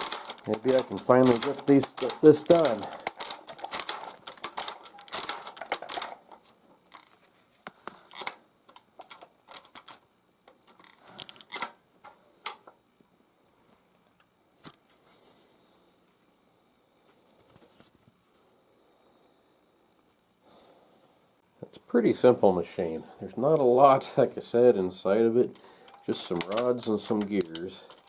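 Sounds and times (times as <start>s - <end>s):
sewing machine clacking: 0.0s - 6.2s, 25.8s - 28.0s.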